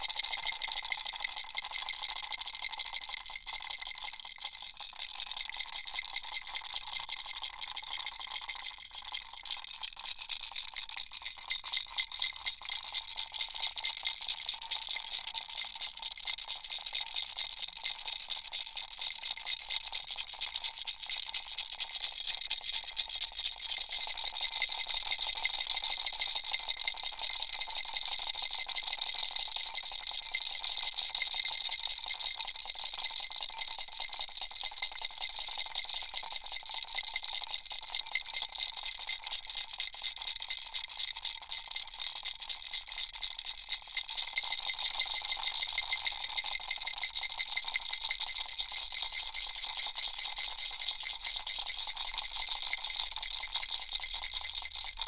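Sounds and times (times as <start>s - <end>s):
baby rattle shaking: 40.8s - 55.0s.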